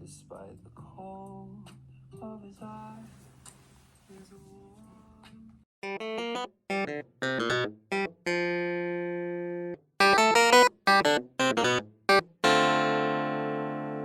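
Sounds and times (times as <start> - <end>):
cheerful keyboard music: 5.8 - 14.0.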